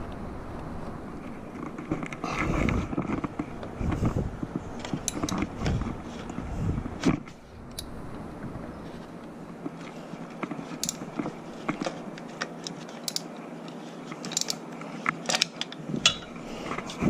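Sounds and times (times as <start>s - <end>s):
tools clicking and tapping: 4.8s - 5.5s, 10.4s - 16.9s.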